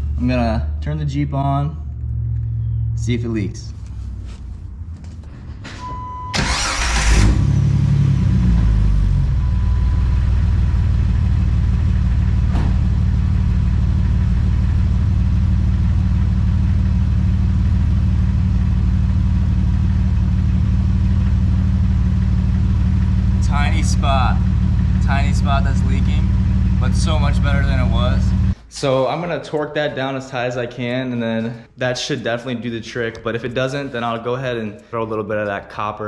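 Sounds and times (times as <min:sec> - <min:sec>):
starter cranking: 0:06.4 - 0:07.4
car engine idling: 0:06.4 - 0:28.7.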